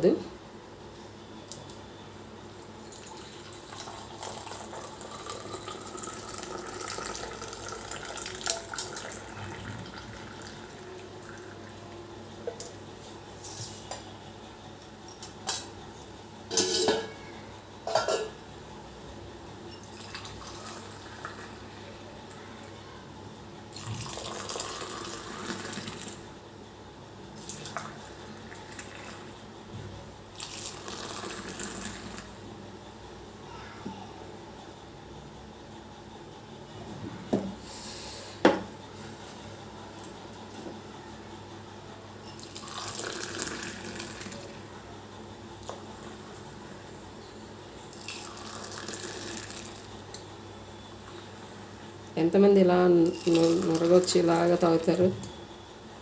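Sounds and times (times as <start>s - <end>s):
tea pouring into a cup: 2.8s - 11.8s, 19.8s - 21.6s, 23.7s - 26.2s, 27.4s - 29.4s, 30.3s - 32.3s, 42.3s - 44.6s, 47.9s - 49.9s, 53.1s - 54.6s
metal utensils clinking: 16.5s - 17.1s.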